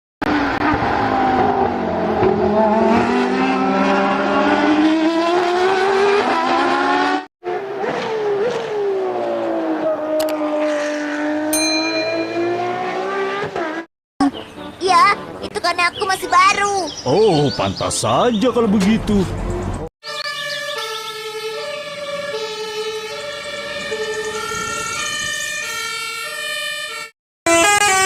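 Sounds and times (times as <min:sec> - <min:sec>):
race car engine revving: 0:00.3 - 0:11.5, 0:12.1 - 0:13.9
high ringing tone: 0:11.6 - 0:12.9.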